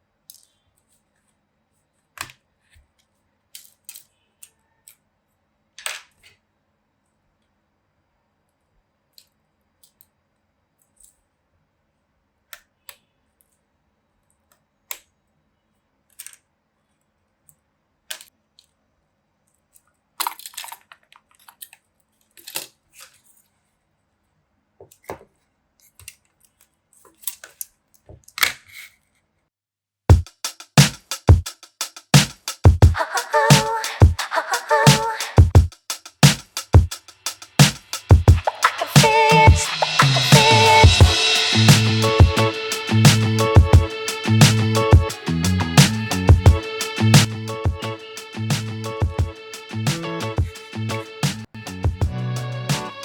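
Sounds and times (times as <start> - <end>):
small parts clicking: 3.0 - 5.0, 16.1 - 16.5, 19.5 - 23.4
music with heavy drum beat: 30.1 - 53.0.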